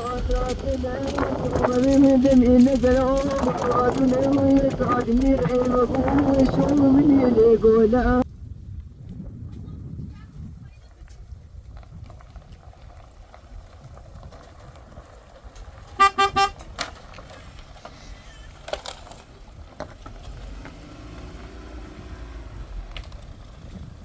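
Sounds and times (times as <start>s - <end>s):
low background rumble: 0.0s - 24.0s
vehicle horn honking: 15.9s - 16.7s.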